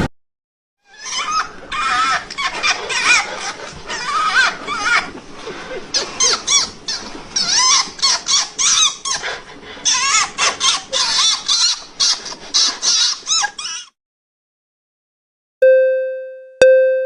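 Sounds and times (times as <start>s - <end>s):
fox yipping and squeaking: 0.9s - 5.2s, 5.9s - 13.9s.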